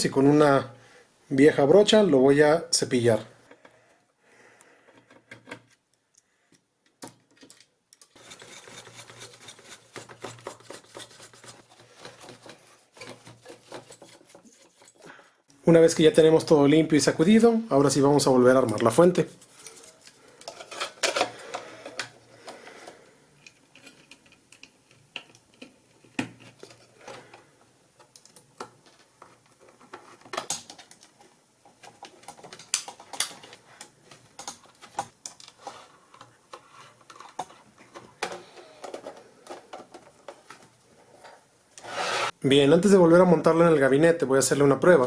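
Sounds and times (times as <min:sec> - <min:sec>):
clicks taps and knocks of metal parts: 0:06.5 - 0:08.2, 0:23.4 - 0:26.8, 0:28.0 - 0:35.6.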